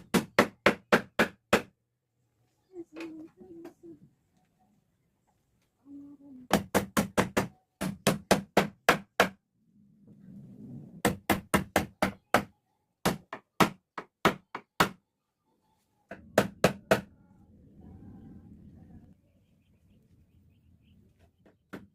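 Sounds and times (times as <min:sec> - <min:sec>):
hammer striking wood: 0:00.0 - 0:01.8, 0:06.5 - 0:09.4, 0:11.0 - 0:15.0, 0:16.1 - 0:17.1.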